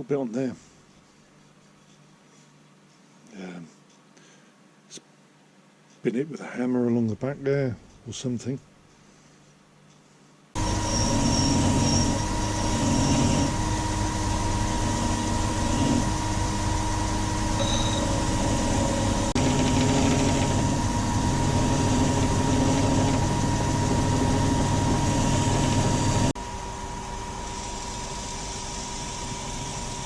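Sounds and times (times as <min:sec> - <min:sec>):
electric grinder grinding steel: 0:10.6 - 0:26.3.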